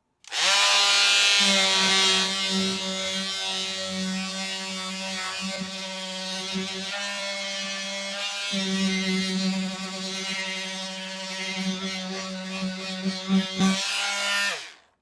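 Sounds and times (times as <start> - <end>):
multi-tool sanding wood: 0.3 - 14.8.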